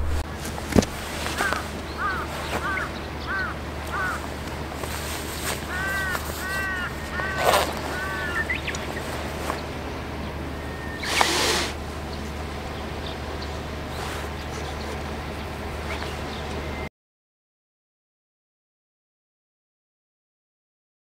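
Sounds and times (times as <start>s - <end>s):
bird cawing: 1.3s - 11.8s
brief rush of noise: 11.0s - 11.8s.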